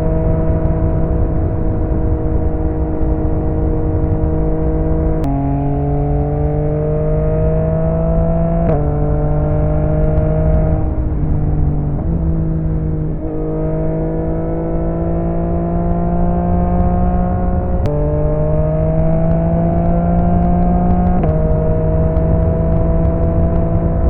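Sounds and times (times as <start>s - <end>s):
motorcycle engine accelerating: 0.0s - 24.0s.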